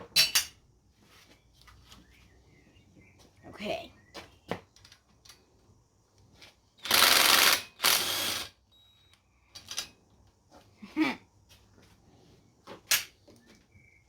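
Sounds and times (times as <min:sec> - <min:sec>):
air impact tool bursts: 0:06.8 - 0:08.6.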